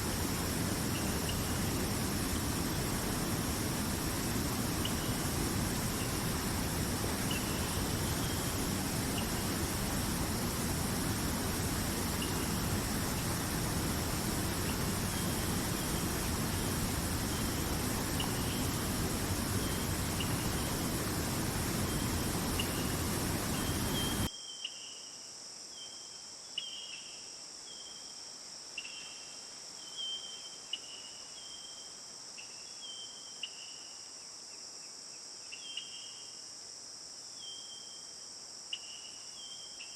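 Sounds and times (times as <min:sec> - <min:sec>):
insects shrilling: 0:00.0 - 0:24.3.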